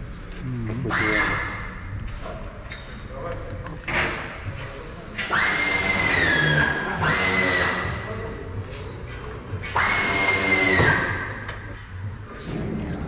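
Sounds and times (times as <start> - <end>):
power tool whining: 9.7 - 11.2.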